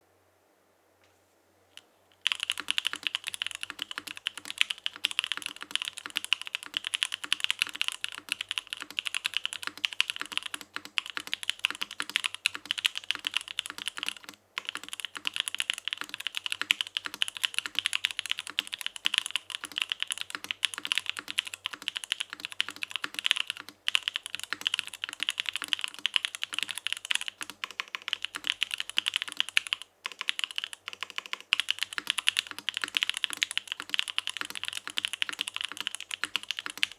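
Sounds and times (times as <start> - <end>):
mechanical keyboard typing: 2.2 - 36.9.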